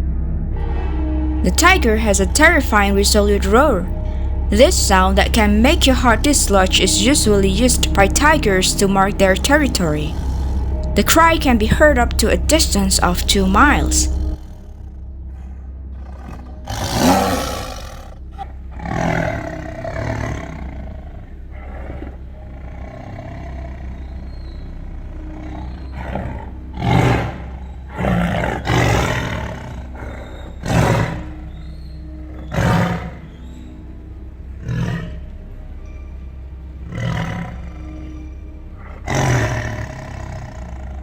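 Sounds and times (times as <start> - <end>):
tiger roaring: 10.1 - 10.9, 14.1 - 33.4, 34.6 - 35.3, 36.8 - 38.1, 38.8 - 41.0
tiger grunting calls: 10.1 - 11.0, 14.1 - 33.8, 34.6 - 35.4, 36.8 - 38.2, 38.8 - 41.0.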